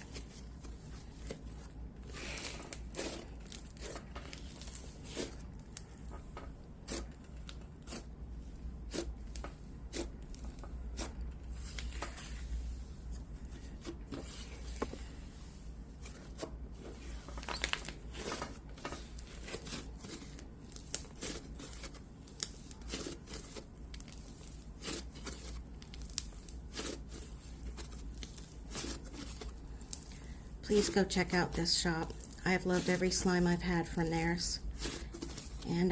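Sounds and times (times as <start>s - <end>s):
hands squishing gritty slime: 0.0s - 35.9s.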